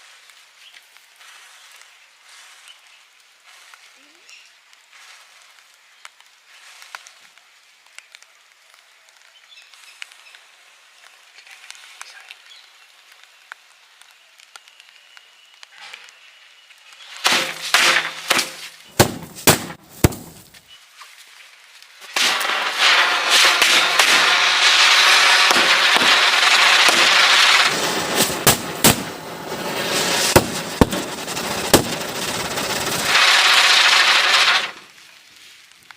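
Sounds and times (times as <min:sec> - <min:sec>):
burning matches crackling: 0:00.1 - 0:35.9
firework hissing: 0:17.0 - 0:20.5, 0:22.0 - 0:35.0
sharp pops: 0:17.0 - 0:20.6, 0:22.0 - 0:34.8
firecracker bangs: 0:17.2 - 0:20.5, 0:22.0 - 0:34.8.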